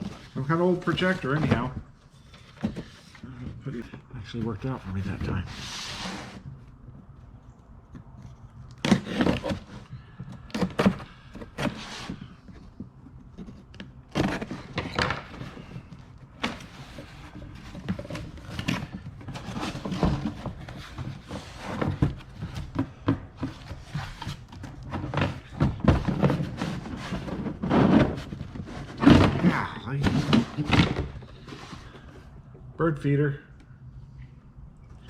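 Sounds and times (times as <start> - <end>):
knocks and thunks in cardboard box: 0.0 - 4.0, 8.8 - 32.1
rustling: 0.0 - 32.4.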